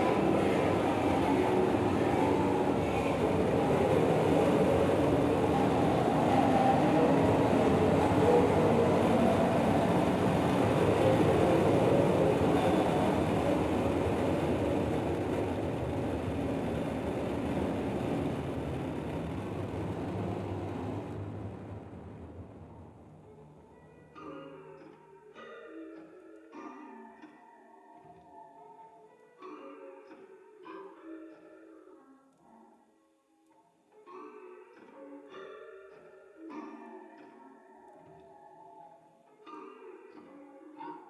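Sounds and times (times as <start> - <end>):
dense mass of low noise: 0.0 - 24.0.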